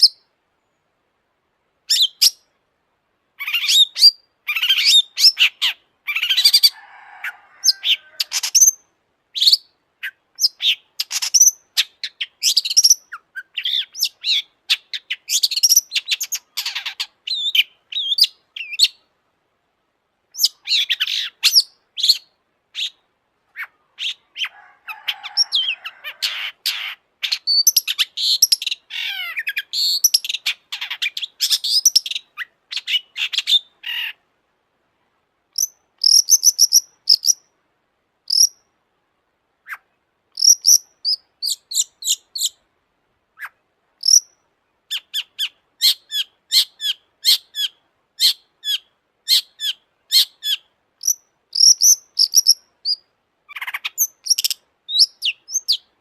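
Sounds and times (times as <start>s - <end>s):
bird singing: 3.4s - 6.8s, 7.6s - 19.1s, 25.2s - 34.2s, 35.6s - 37.5s, 38.3s - 38.7s, 40.4s - 42.6s, 43.4s - 56.0s.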